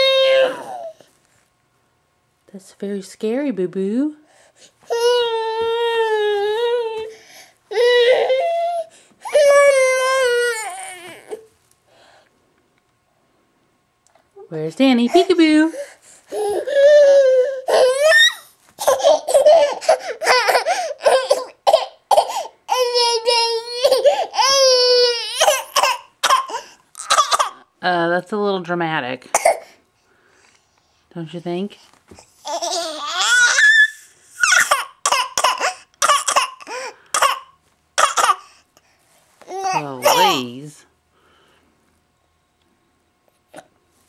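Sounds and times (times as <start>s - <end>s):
little boy whining: 0.0s - 1.0s, 4.9s - 11.5s, 16.3s - 21.6s, 32.4s - 35.2s
baby squealing: 16.3s - 21.4s, 32.4s - 36.8s
baby laughing: 17.7s - 24.5s, 32.4s - 33.7s.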